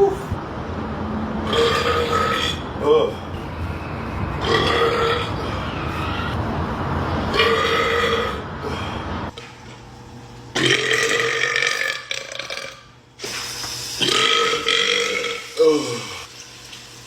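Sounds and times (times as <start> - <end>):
man burping: 1.5 - 3.2, 10.6 - 12.9, 14.0 - 16.3.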